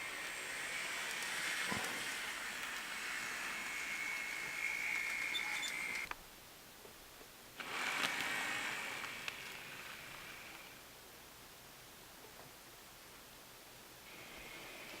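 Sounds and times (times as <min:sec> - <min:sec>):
small electric motor whining: 0:00.0 - 0:06.1, 0:07.6 - 0:10.8.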